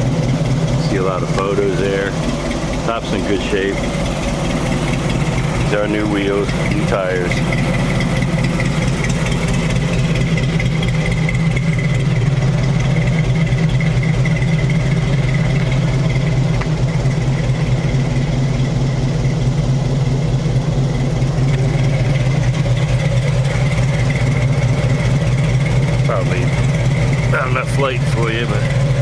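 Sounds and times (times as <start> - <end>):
engine idling: 0.0 - 29.0.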